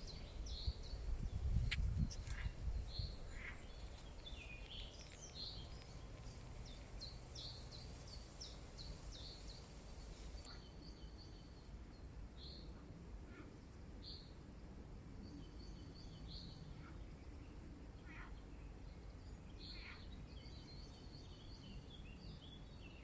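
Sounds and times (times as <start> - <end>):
low outdoor rumble: 0.0 - 10.5
small birds chirping: 0.0 - 11.7.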